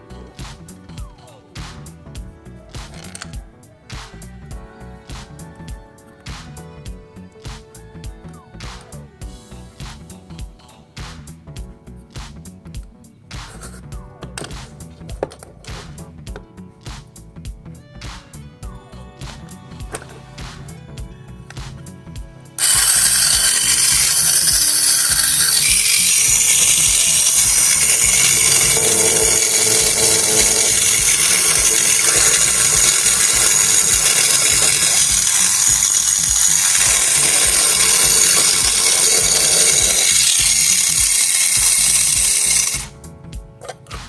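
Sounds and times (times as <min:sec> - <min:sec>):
small motor with gear whirr: 0:22.6 - 0:42.9.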